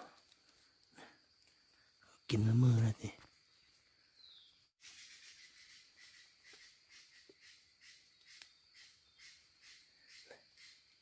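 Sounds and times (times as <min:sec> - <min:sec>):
pulsing insect chorus: 0:00.0 - 0:11.0.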